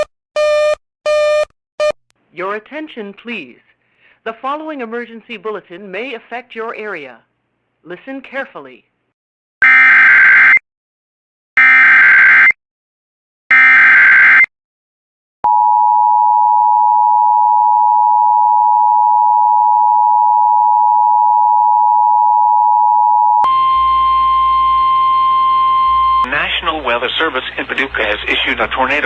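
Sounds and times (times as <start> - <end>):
two-tone attention signal: 23.4 - 26.3
steady high tone: 23.4 - 27.4.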